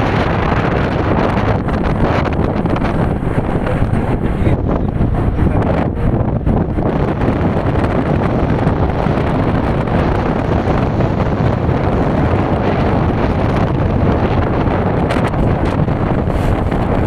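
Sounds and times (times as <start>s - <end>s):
vehicle running noise: 0.0s - 17.0s
wind rushing over microphone: 0.0s - 17.0s.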